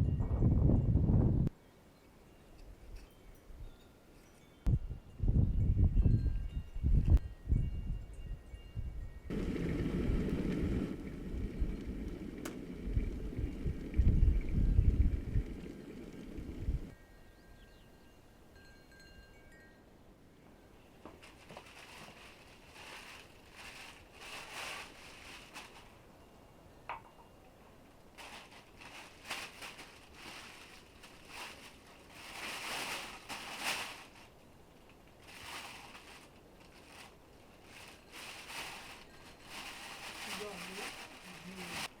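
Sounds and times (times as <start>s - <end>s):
rustling and crunching: 21.0s - 26.2s, 28.1s - 42.0s.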